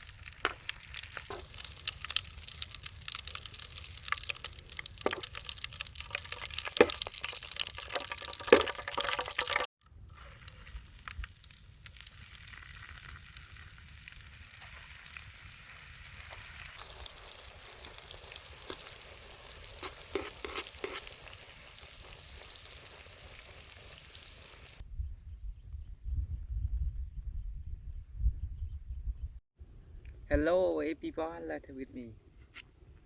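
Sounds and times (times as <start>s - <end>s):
food sizzling in hot oil: 0.0s - 24.8s.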